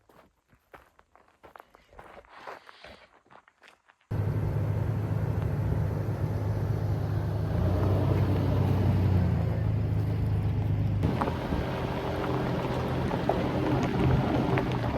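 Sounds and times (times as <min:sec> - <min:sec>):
truck engine and road hum: 0:04.1 - 0:14.9.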